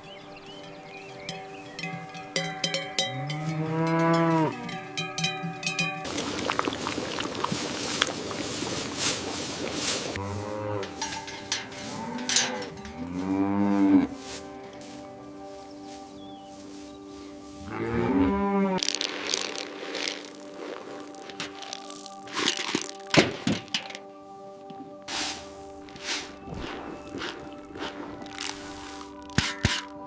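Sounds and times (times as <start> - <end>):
cows mooing: 3.0 - 5.2, 10.2 - 14.2, 17.6 - 19.6.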